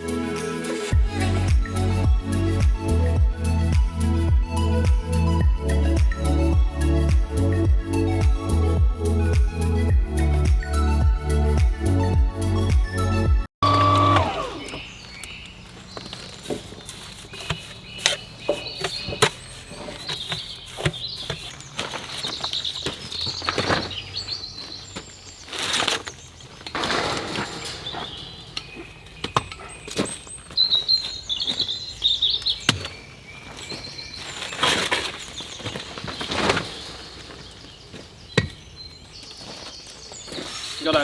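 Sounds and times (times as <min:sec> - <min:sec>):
birds chirping: 0:13.6 - 0:41.0
rustling scraping noises: 0:14.8 - 0:41.0.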